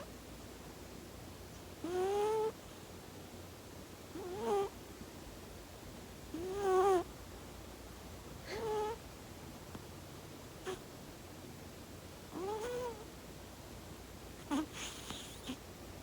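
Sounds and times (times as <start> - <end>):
kitten snoring: 1.8 - 2.6, 4.1 - 4.7, 6.3 - 7.1, 8.4 - 9.0, 10.6 - 10.8, 12.3 - 13.1, 14.4 - 15.6.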